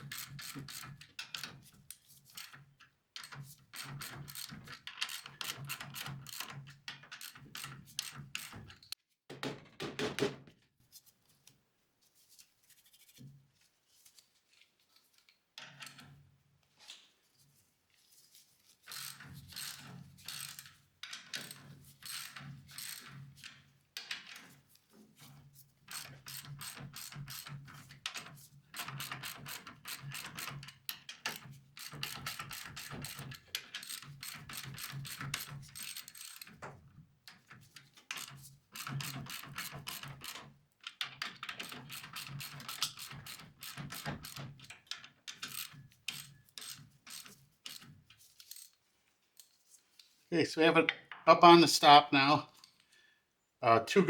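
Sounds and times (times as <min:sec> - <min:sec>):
hand ratchet clicking: 0:00.0 - 0:01.5, 0:03.8 - 0:08.6, 0:18.9 - 0:20.7, 0:21.4 - 0:23.2, 0:25.9 - 0:36.7, 0:37.3 - 0:48.8.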